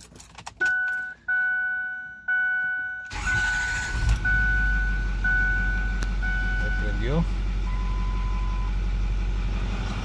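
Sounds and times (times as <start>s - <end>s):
diesel engine running: 3.1s - 10.0s.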